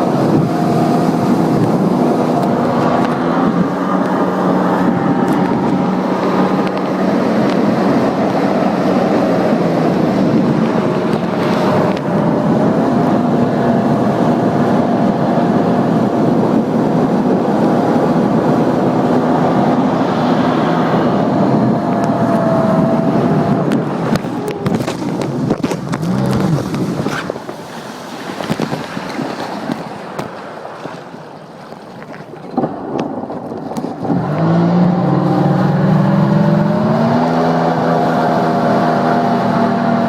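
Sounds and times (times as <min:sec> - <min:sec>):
jet ski engine running: 0:00.0 - 0:40.0
water rushing: 0:00.0 - 0:40.0
wind noise: 0:00.0 - 0:40.0.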